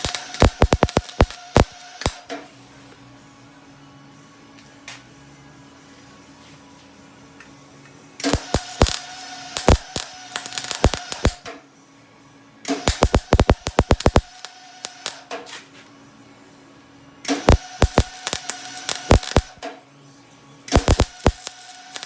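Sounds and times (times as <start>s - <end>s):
welding arc crackling: 0.0s - 2.2s, 8.2s - 11.4s, 12.8s - 15.2s, 17.4s - 19.6s, 20.7s - 22.0s.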